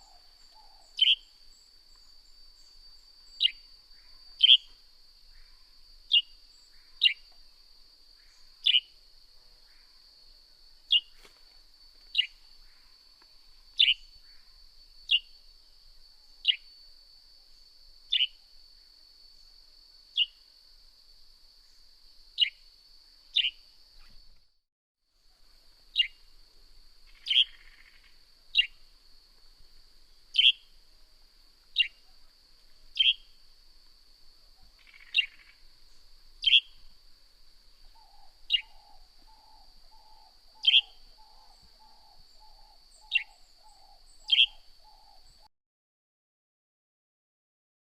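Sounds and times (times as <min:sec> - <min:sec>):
sparrow chirping: 0:00.0 - 0:01.4, 0:02.6 - 0:04.8, 0:05.4 - 0:07.4, 0:08.3 - 0:08.9, 0:12.1 - 0:12.4, 0:13.8 - 0:14.1, 0:18.1 - 0:18.3, 0:23.4 - 0:23.6, 0:26.0 - 0:26.2, 0:27.1 - 0:28.8, 0:30.3 - 0:30.7, 0:31.8 - 0:32.0, 0:32.9 - 0:33.3, 0:34.8 - 0:35.6, 0:36.4 - 0:36.8, 0:38.0 - 0:45.4
high-pitched insect drone: 0:25.9 - 0:30.9, 0:31.7 - 0:45.3.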